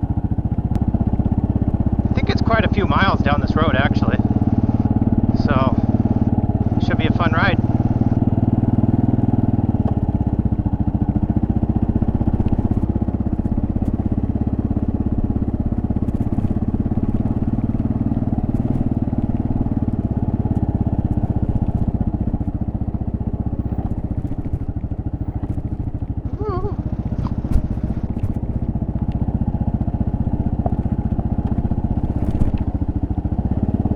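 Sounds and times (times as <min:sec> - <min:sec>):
motorcycle engine cruising: 0:00.0 - 0:33.9
faint gravel clicks: 0:12.0 - 0:33.0.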